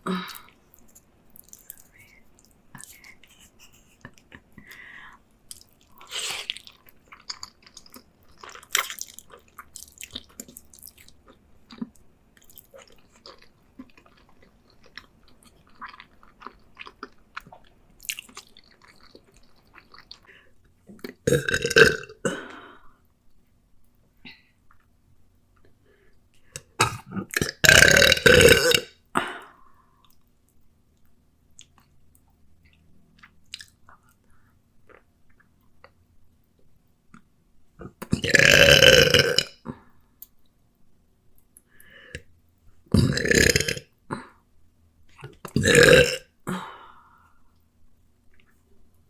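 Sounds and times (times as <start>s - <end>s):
woman burping loudly: 0.0s - 0.6s, 21.0s - 22.8s, 26.8s - 29.5s, 37.9s - 39.7s, 42.9s - 44.4s, 45.5s - 46.8s
faint chewing: 0.3s - 21.2s, 29.9s - 38.2s.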